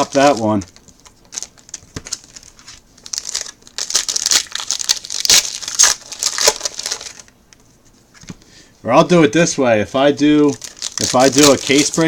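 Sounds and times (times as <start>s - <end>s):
plastic wrapping tearing and crinkling: 0.0s - 7.3s, 10.5s - 12.0s.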